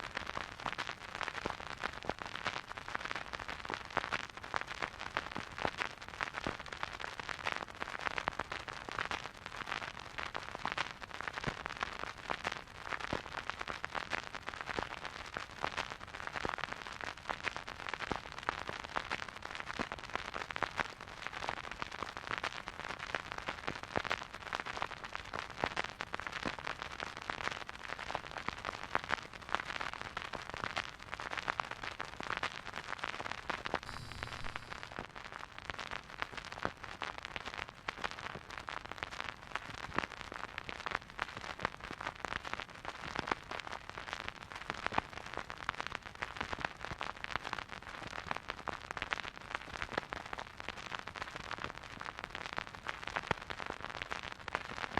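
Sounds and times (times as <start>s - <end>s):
vinyl record hiss and crackle: 0.0s - 54.9s.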